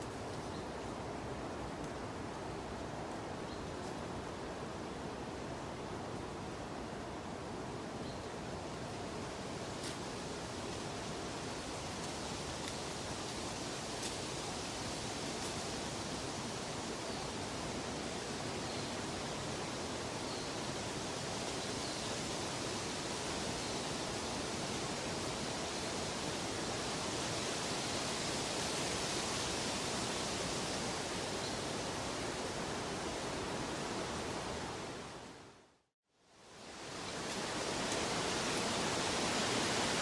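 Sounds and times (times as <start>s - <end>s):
running water rushing: 36.5s - 40.0s.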